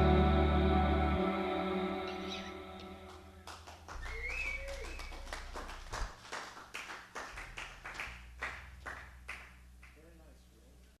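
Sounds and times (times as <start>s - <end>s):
gliding tone: 0.0s - 3.4s.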